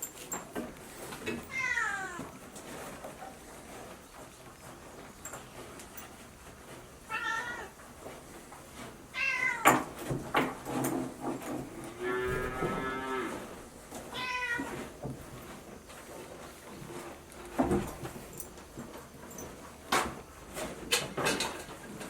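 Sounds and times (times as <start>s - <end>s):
cat meowing: 1.5s - 2.2s, 7.1s - 7.7s, 9.2s - 9.6s, 14.1s - 14.7s.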